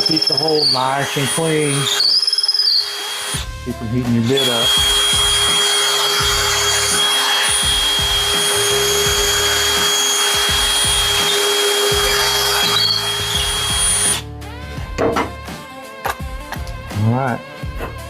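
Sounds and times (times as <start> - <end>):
power drill whining into wood: 0.0 - 14.2.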